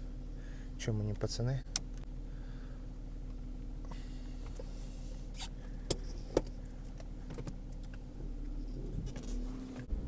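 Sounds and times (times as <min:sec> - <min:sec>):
diesel engine humming: 0:00.0 - 0:10.0.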